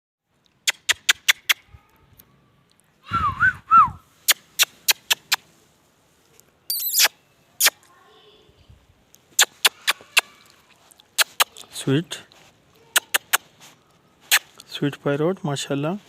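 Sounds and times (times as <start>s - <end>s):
sharp clicks: 0.4s - 1.6s.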